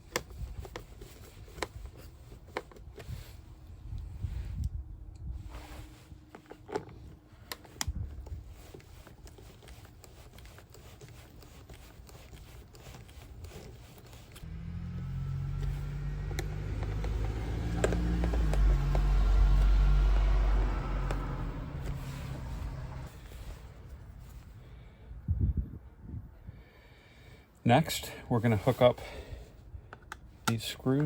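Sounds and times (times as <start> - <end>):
vehicle engine rumble: 14.2 - 26.6.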